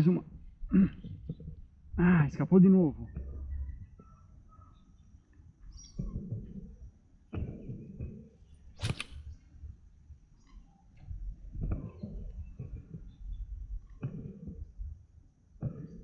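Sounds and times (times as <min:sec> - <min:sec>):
short sharp swish: 0:08.8 - 0:09.2.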